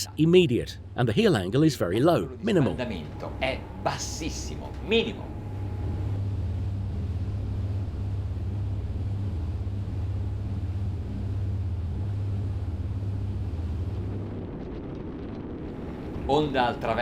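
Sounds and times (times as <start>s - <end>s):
boat engine hum: 0.0s - 17.0s.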